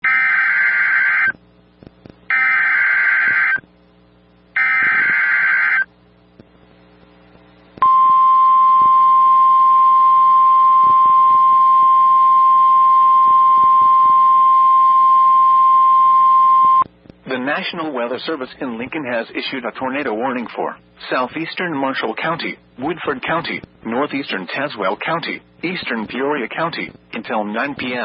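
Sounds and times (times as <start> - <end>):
steady warning alarm tone: 0.0 - 1.4, 2.3 - 3.6, 4.6 - 5.9
warbling data noise bursts: 2.3 - 3.8, 4.5 - 5.9.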